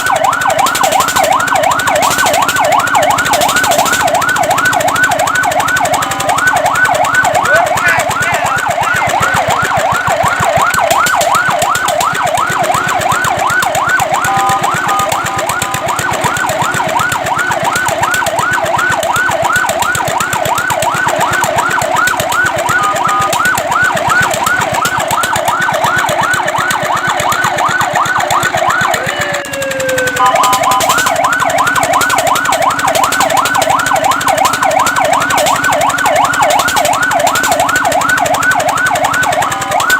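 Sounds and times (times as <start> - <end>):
fire truck siren yelping: 0.0 - 39.9
multi-note siren tones: 0.0 - 39.9.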